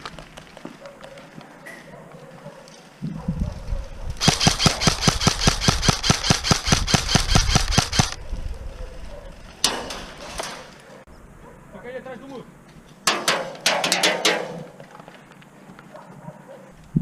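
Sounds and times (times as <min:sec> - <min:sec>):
airsoft gun rapid firing: 0:04.2 - 0:08.2.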